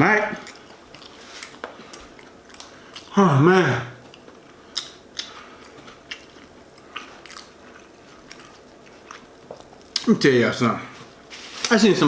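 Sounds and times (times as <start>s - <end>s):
person chewing food: 0.3s - 3.2s, 4.0s - 10.1s.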